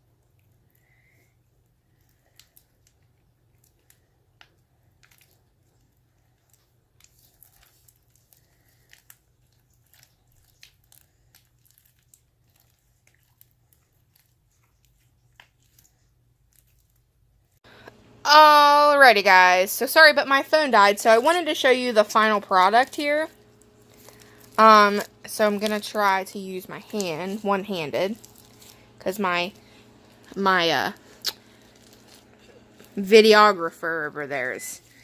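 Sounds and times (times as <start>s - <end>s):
small sticky clicks: 1.9s - 17.1s, 25.3s - 30.4s, 31.0s - 33.0s
slime crackling and squishing: 1.9s - 17.3s, 20.6s - 33.8s.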